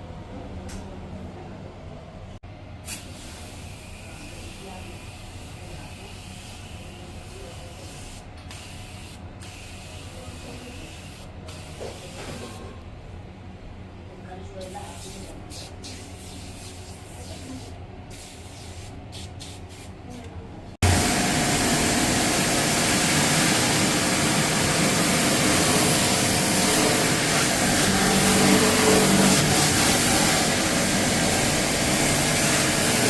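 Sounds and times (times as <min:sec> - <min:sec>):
high-pressure water jet spraying: 0:20.8 - 0:33.0.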